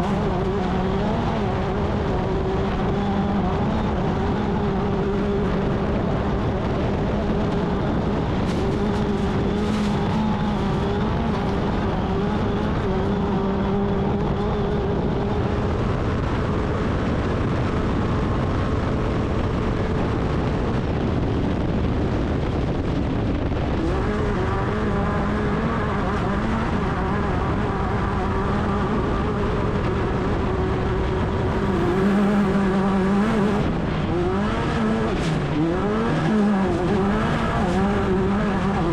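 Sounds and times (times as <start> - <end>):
race car engine at high revs: 0.0 - 38.9.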